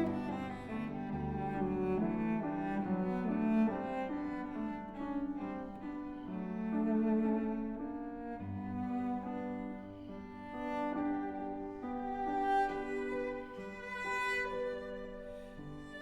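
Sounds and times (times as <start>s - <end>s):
bowed strings melody: 0.0s - 16.0s
piano: 0.0s - 16.0s.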